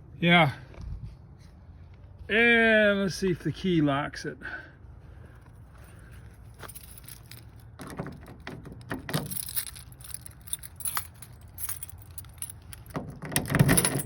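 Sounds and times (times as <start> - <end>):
keys jangling: 6.6 - 14.0
key clicking in lock: 12.2 - 14.0.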